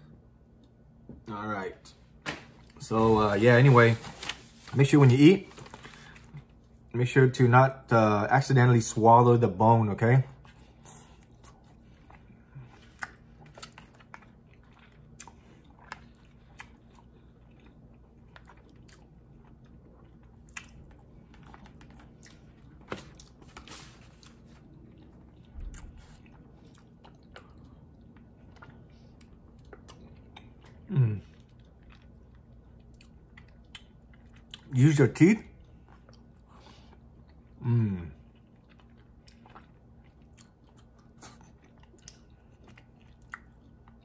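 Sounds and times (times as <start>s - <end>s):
chewing and biting food: 10.3s - 34.8s, 35.4s - 44.0s.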